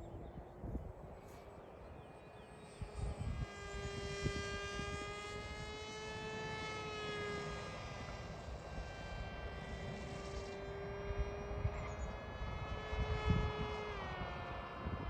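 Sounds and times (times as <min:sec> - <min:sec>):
wind buffeting microphone: 0:00.0 - 0:02.1, 0:02.8 - 0:05.8, 0:08.9 - 0:15.0
model plane motor humming: 0:00.1 - 0:15.0.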